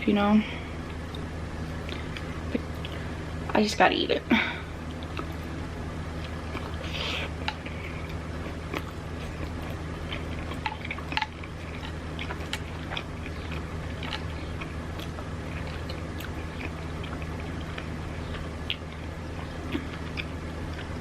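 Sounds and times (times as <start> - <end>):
low hum: 0.0 - 21.0
crunching and chewing snacks: 6.1 - 21.0.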